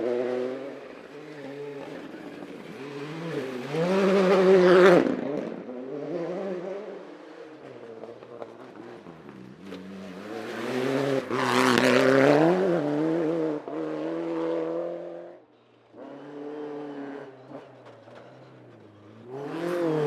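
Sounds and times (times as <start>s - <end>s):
rally car engine passing: 0.0s - 20.0s.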